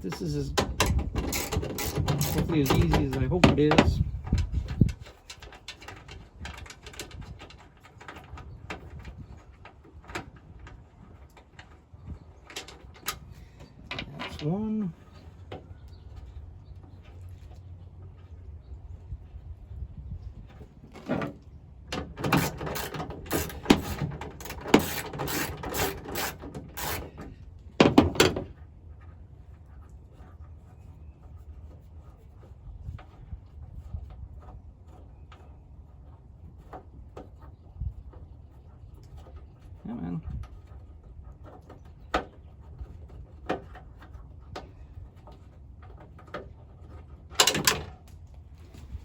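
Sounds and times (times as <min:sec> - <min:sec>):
hand tools clicking and knocking: 0:00.0 - 0:08.3, 0:21.9 - 0:28.5, 0:47.3 - 0:48.0
rattle of clicks: 0:00.4 - 0:04.5, 0:47.3 - 0:48.0.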